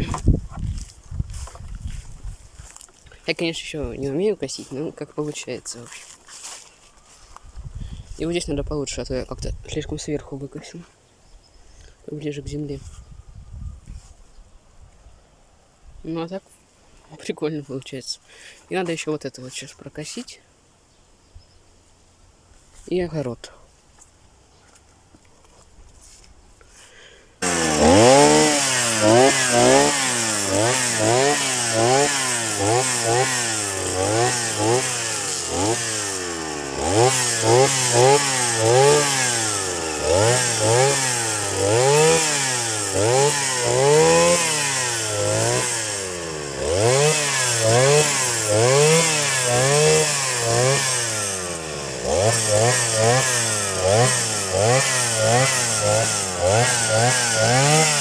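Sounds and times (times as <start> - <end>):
brush cutter engine revving: 0.0 - 7.3, 27.4 - 58.0.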